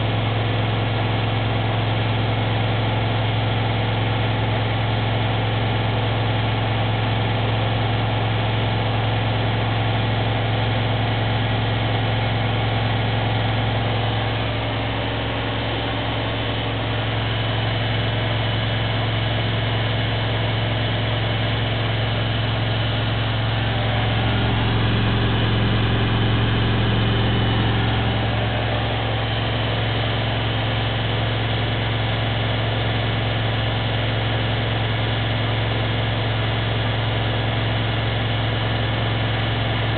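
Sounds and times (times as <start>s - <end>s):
washing machine spinning: 21.4s - 31.6s.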